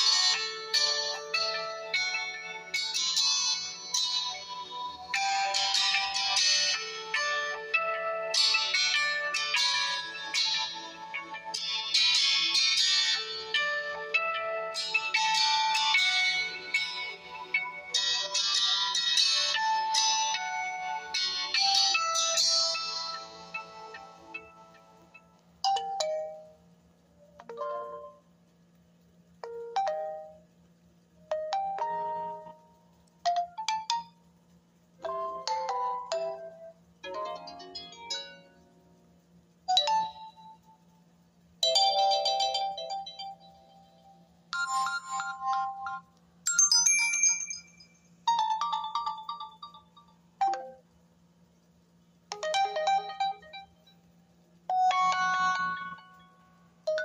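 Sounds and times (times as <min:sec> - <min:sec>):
phone ringtones and chimes: 0:00.0 - 0:26.6, 0:41.6 - 0:50.8, 0:54.7 - 0:56.3.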